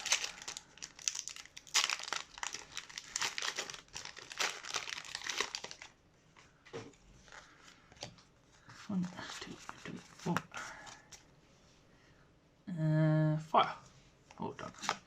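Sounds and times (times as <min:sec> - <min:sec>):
foil wrapper crinkling: 0:00.0 - 0:06.0.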